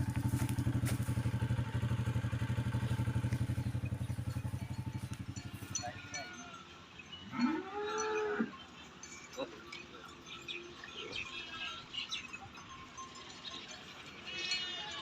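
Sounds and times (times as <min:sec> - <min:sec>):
small engine puttering: 0:00.0 - 0:06.2.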